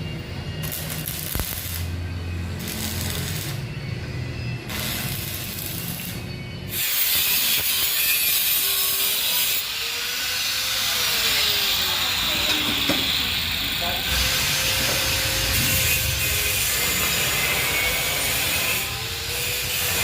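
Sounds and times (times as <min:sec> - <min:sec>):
arc welding sizzle: 0:00.6 - 0:03.7, 0:04.6 - 0:20.0
welding machine humming: 0:00.6 - 0:03.7, 0:04.7 - 0:20.0.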